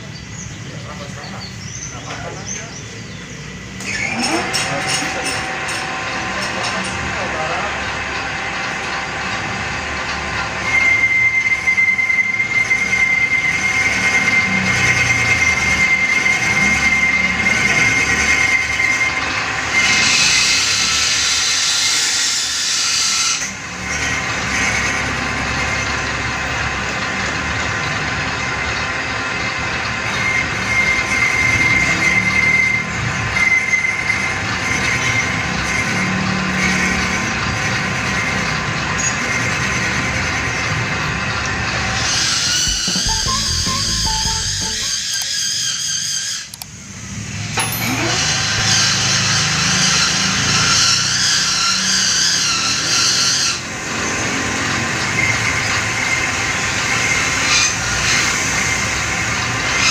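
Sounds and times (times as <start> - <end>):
lathe tool squealing on metal: 0.2 - 46.6, 47.6 - 59.9.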